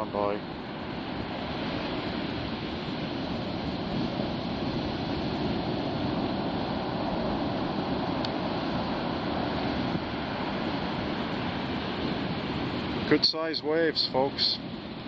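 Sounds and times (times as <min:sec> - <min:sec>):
waves breaking on beach: 0:00.0 - 0:15.0.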